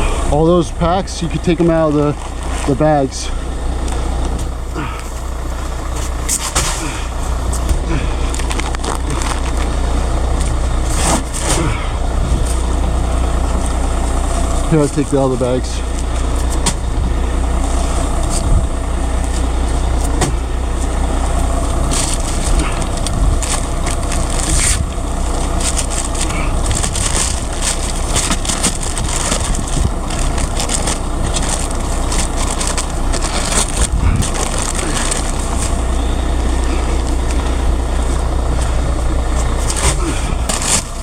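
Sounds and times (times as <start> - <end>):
truck diesel engine running: 0.0 - 41.0.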